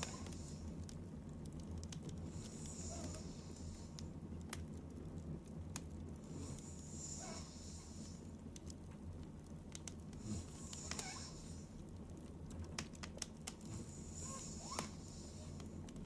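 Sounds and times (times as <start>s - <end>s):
woman breathing softly: 0.0s - 0.8s, 2.2s - 4.2s, 6.2s - 8.4s, 10.1s - 11.8s, 13.6s - 15.9s
small clicks: 9.4s - 11.0s.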